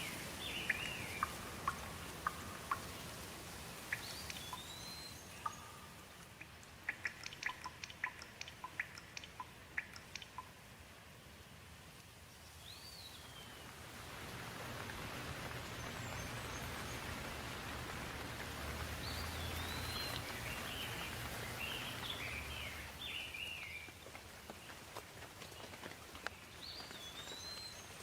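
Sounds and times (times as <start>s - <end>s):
bird chirping: 0.0s - 3.2s, 3.8s - 10.5s, 12.4s - 13.8s, 15.4s - 17.8s, 18.9s - 24.8s, 25.4s - 28.0s
rain falling: 0.0s - 28.0s.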